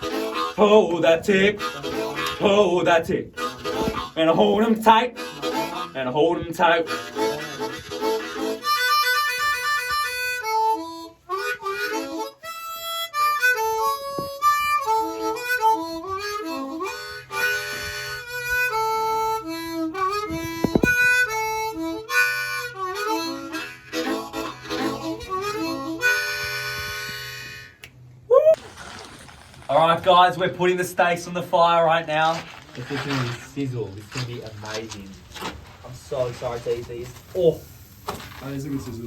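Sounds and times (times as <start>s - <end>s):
harmonica melody: 0.0s - 28.2s.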